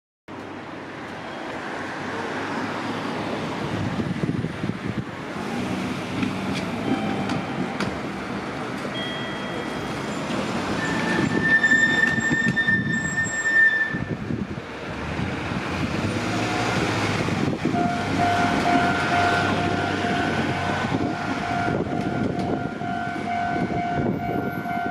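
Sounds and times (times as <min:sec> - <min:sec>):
train wheels rumbling and knocking: 0:03.5 - 0:24.9
high wheel squeal: 0:08.9 - 0:14.4, 0:16.2 - 0:17.1.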